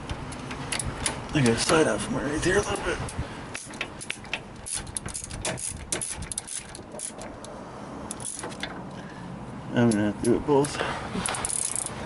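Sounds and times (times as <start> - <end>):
metallic clicks and clinks: 11.3 - 12.0.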